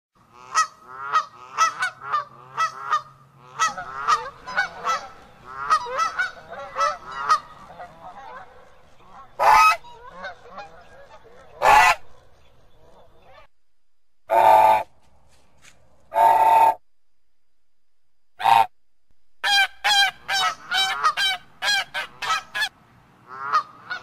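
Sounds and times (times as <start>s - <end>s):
geese honking: 0.3s - 13.5s, 14.3s - 14.9s, 18.4s - 18.7s, 19.4s - 22.7s, 23.3s - 24.0s.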